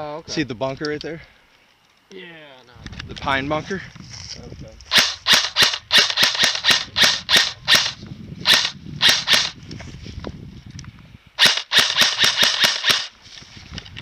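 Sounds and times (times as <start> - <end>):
airsoft gun shots: 4.9 - 9.6, 11.4 - 13.2.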